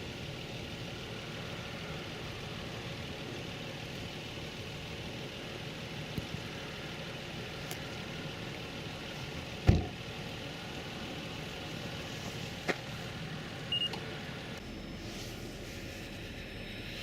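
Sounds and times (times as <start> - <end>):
car road and engine noise: 0.0 - 17.0.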